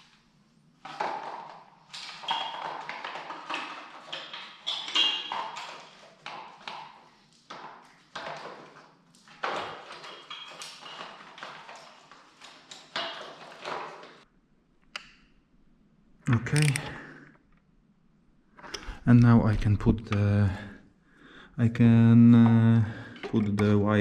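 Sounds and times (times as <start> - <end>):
hard parts tapping and clicking: 22.4 - 24.0.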